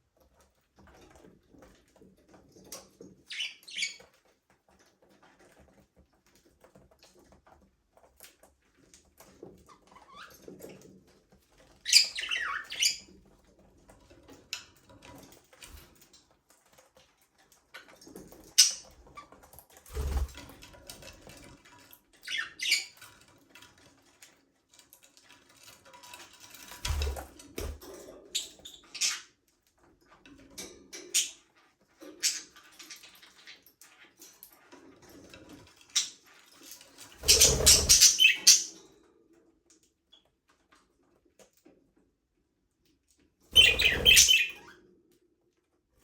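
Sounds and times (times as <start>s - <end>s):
budgerigars chirping: 37.3s - 38.7s, 43.6s - 44.6s.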